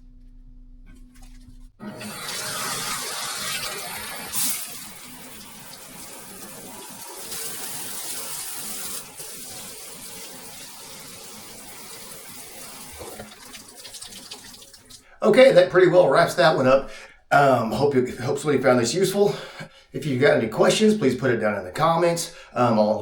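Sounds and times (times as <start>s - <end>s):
water spraying from shower head: 1.8s - 15.1s.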